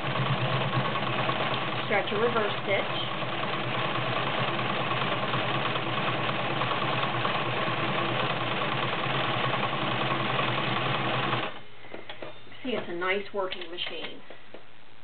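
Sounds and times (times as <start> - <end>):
sewing machine running: 0.0 - 11.6.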